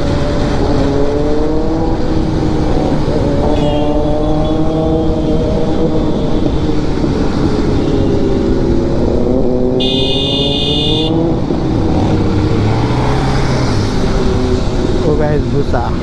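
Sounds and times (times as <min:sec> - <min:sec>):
motorcycle engine running: 0:00.0 - 0:16.0
motorcycle horn: 0:03.4 - 0:08.7, 0:09.8 - 0:11.3.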